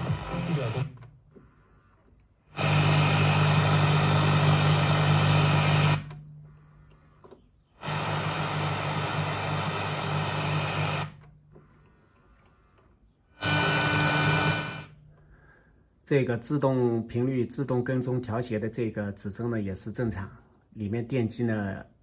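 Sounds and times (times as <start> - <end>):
radio tuning motor running: 0.0 - 1.0, 2.5 - 6.2, 7.8 - 11.2, 13.4 - 15.0.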